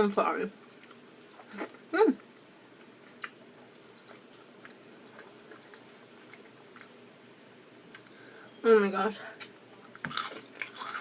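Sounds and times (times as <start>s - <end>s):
low steady hiss: 0.0s - 11.0s
person chewing food: 0.6s - 7.1s, 9.4s - 11.0s.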